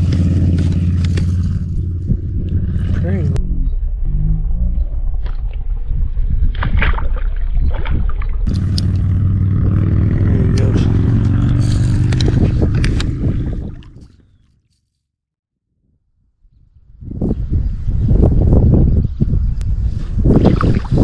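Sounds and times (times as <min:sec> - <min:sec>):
low motor hum: 0:00.0 - 0:14.4
scraping and clicking handling noise: 0:00.1 - 0:01.8.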